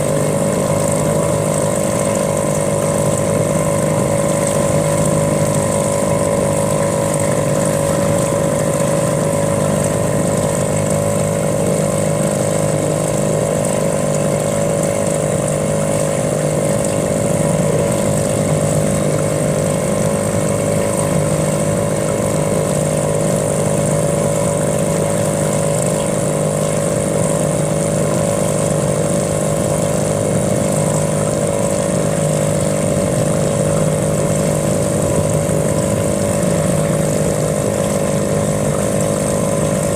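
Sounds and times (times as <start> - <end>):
small outboard motor running: 0.0 - 39.9.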